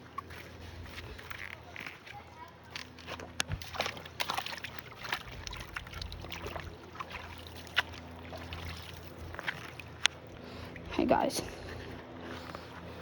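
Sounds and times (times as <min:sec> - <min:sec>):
small clicks in water: 0:01.2 - 0:10.2
stream water splashing: 0:02.7 - 0:12.4.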